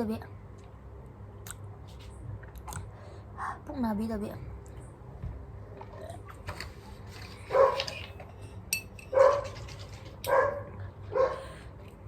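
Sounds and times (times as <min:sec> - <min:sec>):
dog barking: 0:07.5 - 0:07.9, 0:09.1 - 0:09.6, 0:10.3 - 0:11.5.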